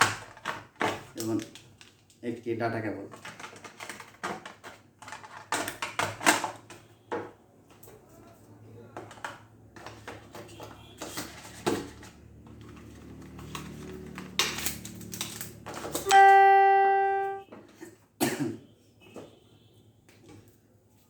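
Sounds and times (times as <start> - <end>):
packaging clicks and rustles: 0.0 - 2.2, 3.1 - 6.8, 9.0 - 16.1
loud ding-like chime: 16.1 - 17.4.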